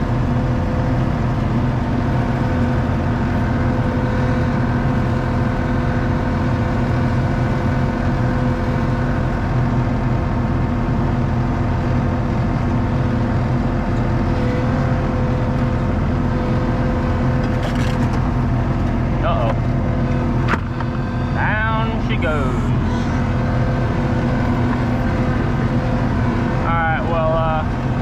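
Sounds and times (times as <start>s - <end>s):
diesel engine running: 0.0s - 28.0s
steady whine: 0.0s - 28.0s.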